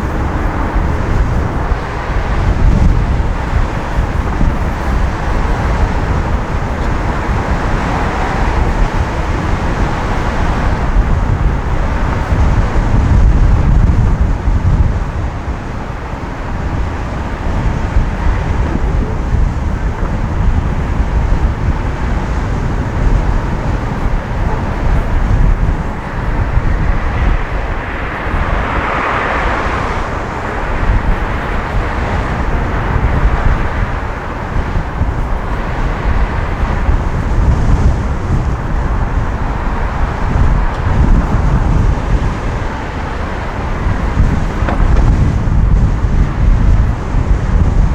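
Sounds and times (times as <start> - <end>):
road and traffic noise: 0.0 - 47.9
wind rumble: 0.0 - 47.9
loud rushing noise: 22.3 - 46.8.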